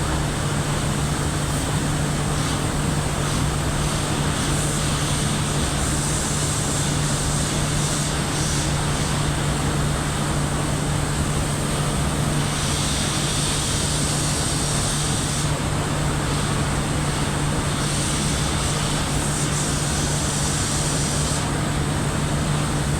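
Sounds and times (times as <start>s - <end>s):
boiler furnace roaring: 0.0s - 22.9s
hiss: 1.5s - 9.3s, 12.4s - 15.6s, 16.2s - 21.6s.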